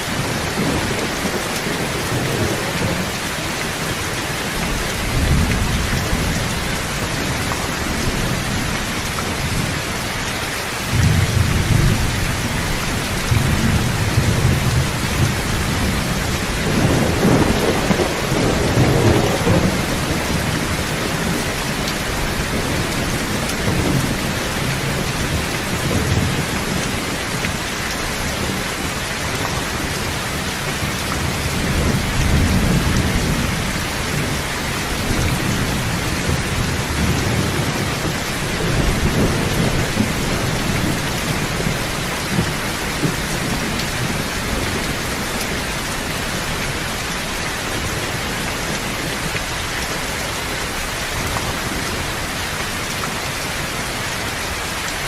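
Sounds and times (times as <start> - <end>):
steady rain: 0.0 - 55.0
thunder rumbling: 10.8 - 29.0, 29.6 - 49.4.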